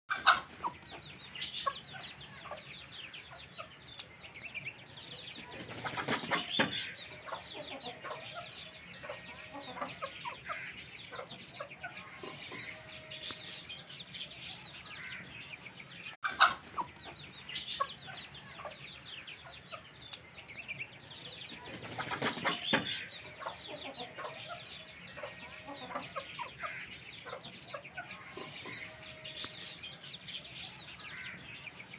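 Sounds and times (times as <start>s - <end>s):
chickens clucking: 0.1s - 31.9s
wings flapping: 5.4s - 6.6s, 21.5s - 22.9s.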